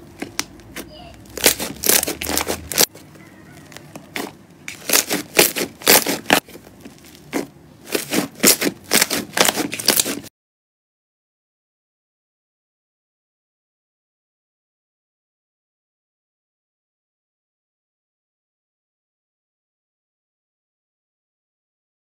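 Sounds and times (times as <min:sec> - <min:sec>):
slime crackling pops: 0:01.3 - 0:02.9.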